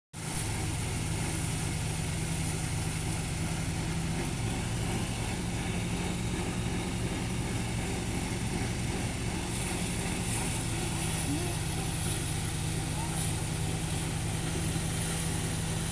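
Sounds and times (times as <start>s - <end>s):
engine running steadily: 0.2s - 15.9s.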